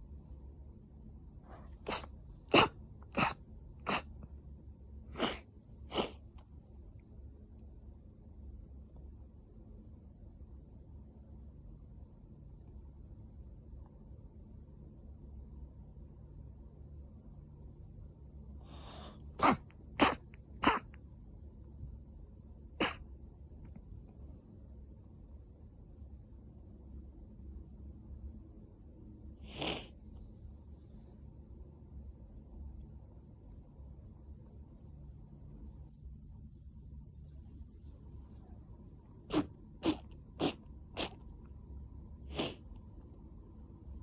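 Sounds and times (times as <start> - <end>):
woman sneezing: 19.4 - 20.8.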